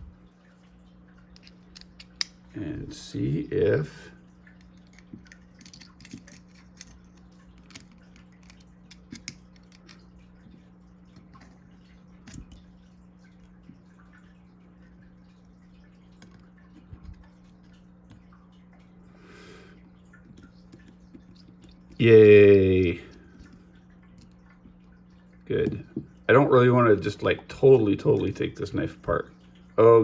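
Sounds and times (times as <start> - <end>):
steady low hum: 0.0 - 30.0
metal parts handled: 4.8 - 7.0.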